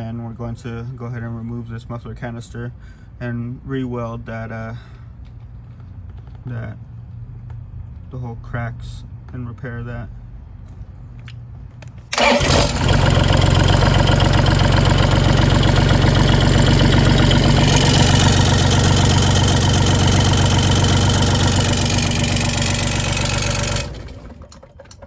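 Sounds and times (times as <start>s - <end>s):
diesel engine starting and running: 12.0s - 25.0s
exhaust metal clattering: 12.1s - 25.0s.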